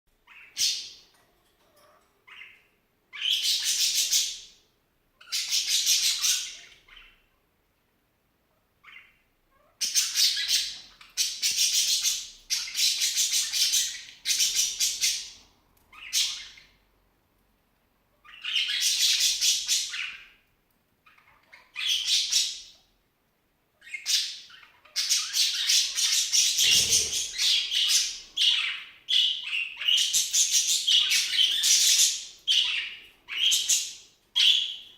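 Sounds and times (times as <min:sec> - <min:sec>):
small pet squealing: 0:26.4 - 0:27.9.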